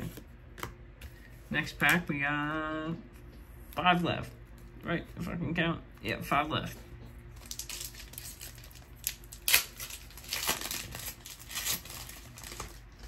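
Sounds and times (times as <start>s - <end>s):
foil wrapper tearing and crinkling: 7.4s - 13.0s.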